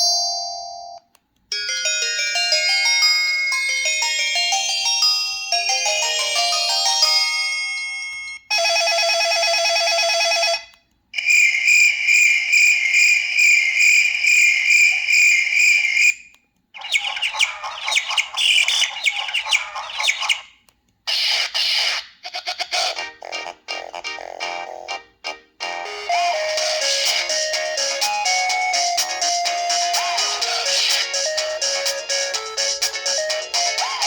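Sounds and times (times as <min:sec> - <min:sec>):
mallet-like ringtone melody: 0:00.0 - 0:08.5
rapid rattling ringtone: 0:01.5 - 0:10.6, 0:25.8 - 0:34.0.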